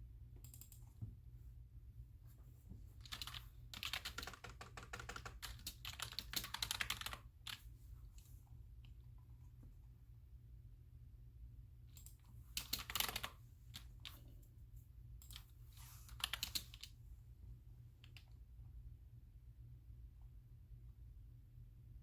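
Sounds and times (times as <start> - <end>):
computer keyboard typing: 0.4 - 0.8, 3.0 - 7.7, 12.0 - 14.2, 15.2 - 17.0.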